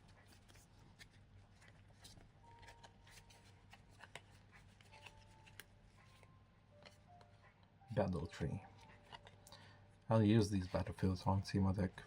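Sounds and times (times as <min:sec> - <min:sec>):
trading cards clicking and rustling: 0:00.0 - 0:07.4, 0:08.4 - 0:09.6.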